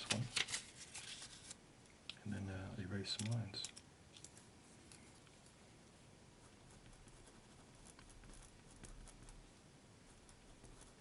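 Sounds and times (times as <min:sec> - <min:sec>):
pencil writing on paper: 0:06.5 - 0:09.4, 0:10.1 - 0:11.0.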